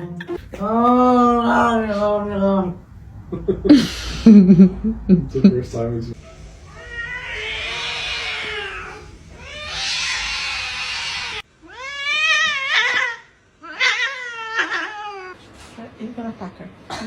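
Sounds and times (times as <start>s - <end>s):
cat hissing: 3.7s - 4.5s, 6.2s - 15.4s
cats yowling: 6.2s - 15.4s.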